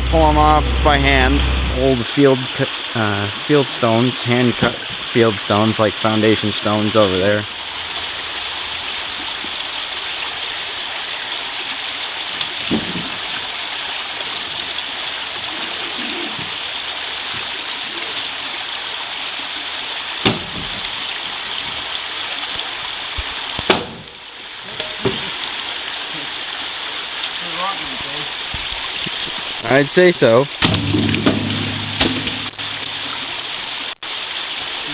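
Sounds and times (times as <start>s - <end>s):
river water rushing: 0.0s - 23.6s, 30.8s - 34.9s.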